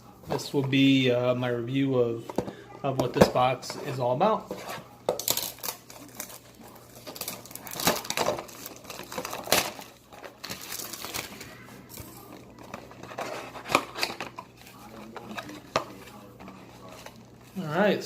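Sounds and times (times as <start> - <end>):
wrapping crinkling and tearing: 5.2 - 17.8.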